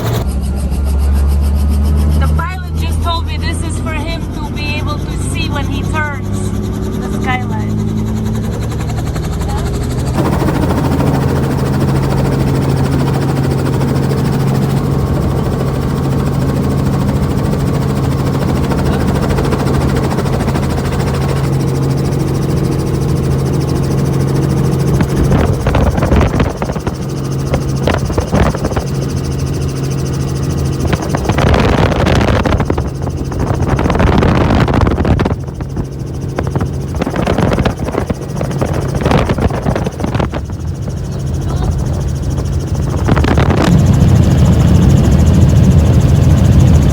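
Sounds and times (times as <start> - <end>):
helicopter engine and rotor drone: 0.0 - 46.9.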